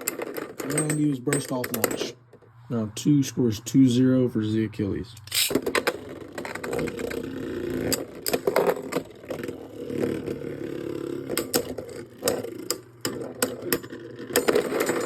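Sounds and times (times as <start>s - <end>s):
plastic tops clacking: 5.2s - 10.3s
spinning tops whirring: 5.3s - 15.0s.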